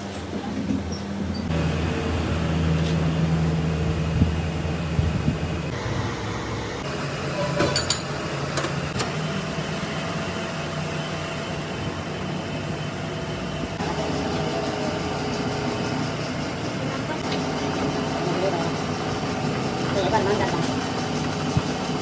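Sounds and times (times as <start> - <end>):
machine hum: 1.5 - 14.8.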